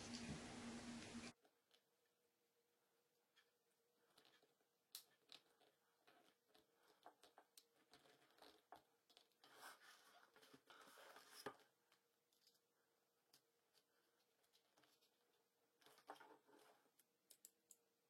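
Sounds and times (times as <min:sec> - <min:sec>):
soft scraping rustle of vinyl wrap: 0:00.0 - 0:01.6, 0:05.4 - 0:12.7.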